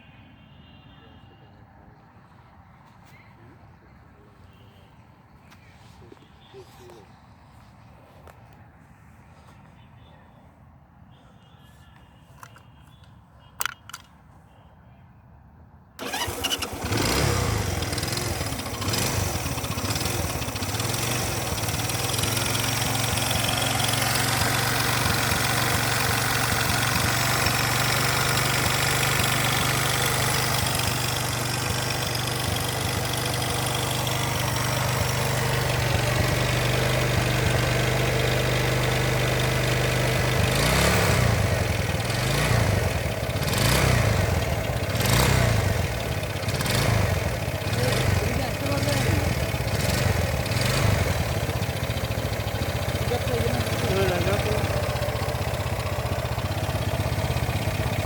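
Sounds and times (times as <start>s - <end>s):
motorcycle engine idling and revving: 16.0s - 58.0s.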